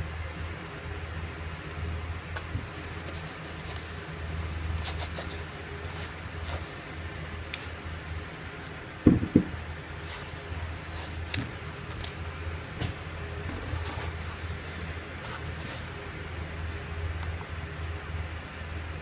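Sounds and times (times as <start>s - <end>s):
steady low hum: 0.0s - 19.0s
dull thumps: 9.1s - 9.5s.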